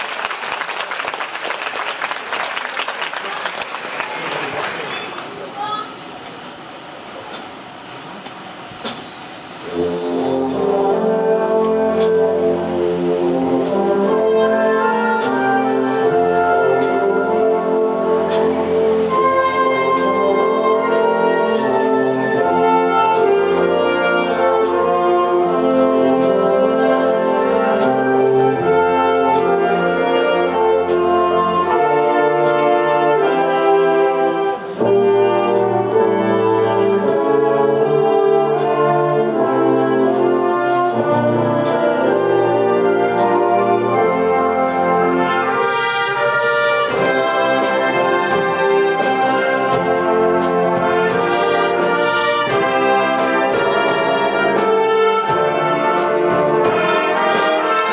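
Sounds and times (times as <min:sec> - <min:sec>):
percussion strokes: 0:06.4 - 0:37.4
wind band playing: 0:06.6 - 0:57.9.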